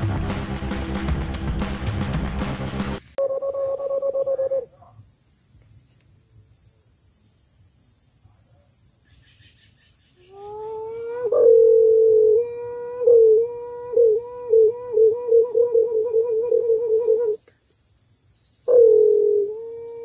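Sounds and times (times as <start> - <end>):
hooting dove call: 3.2 - 4.9, 10.3 - 17.5, 18.7 - 20.0
high insect buzz: 9.0 - 20.0.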